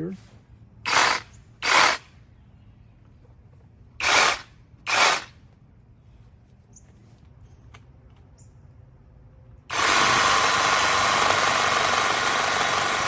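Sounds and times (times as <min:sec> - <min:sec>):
reciprocating saw bursts: 0:00.8 - 0:02.1, 0:04.0 - 0:05.4, 0:09.7 - 0:13.0.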